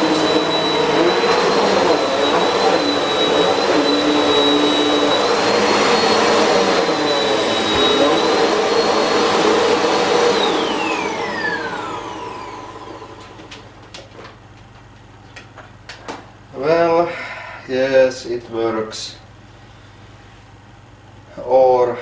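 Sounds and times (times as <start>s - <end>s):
vacuum cleaner running: 0.0s - 14.4s.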